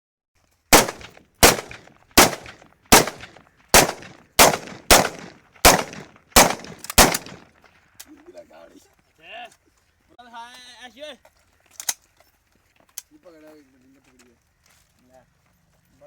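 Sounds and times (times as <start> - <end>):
handgun shots with echo: 0.7 - 7.5.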